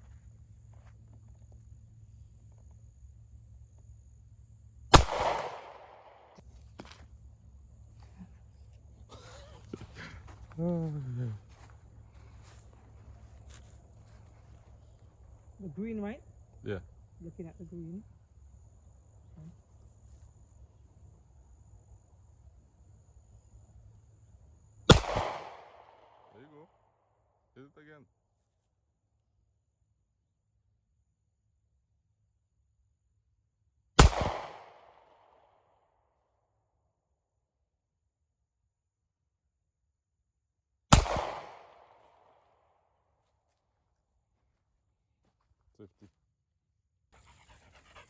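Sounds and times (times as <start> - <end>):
gunshot with echo: 4.9 - 6.2, 24.9 - 26.1, 34.0 - 35.0, 40.9 - 42.0.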